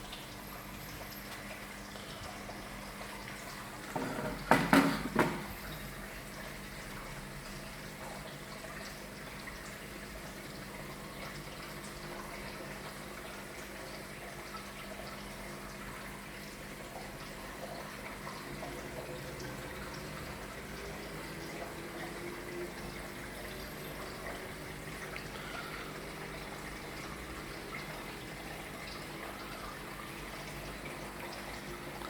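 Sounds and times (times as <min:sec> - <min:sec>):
aquarium water splashing: 0:00.0 - 0:32.0
faint steady hum: 0:00.0 - 0:32.0
loud sharp knocks: 0:04.0 - 0:05.5.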